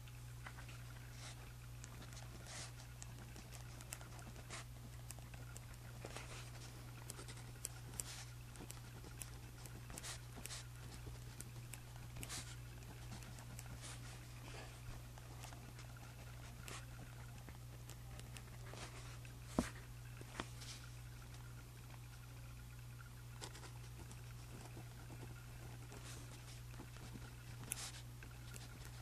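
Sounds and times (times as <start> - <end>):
low steady hum: 0.0 - 29.0
pen scratching on paper: 5.4 - 14.7.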